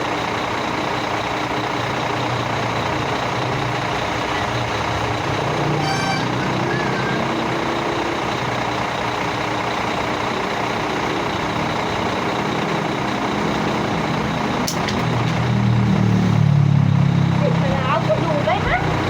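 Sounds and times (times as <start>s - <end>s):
diesel engine running: 0.0s - 19.0s
road noise: 0.0s - 19.0s.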